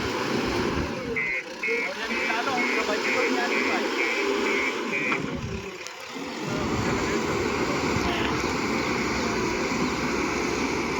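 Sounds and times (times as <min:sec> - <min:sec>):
diesel engine running under load: 0:00.0 - 0:10.9
reversing alarm beeping: 0:01.2 - 0:05.6.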